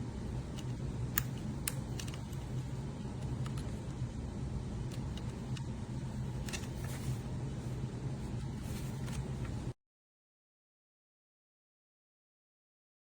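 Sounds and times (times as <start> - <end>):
low mechanical hum: 0.0 - 9.8.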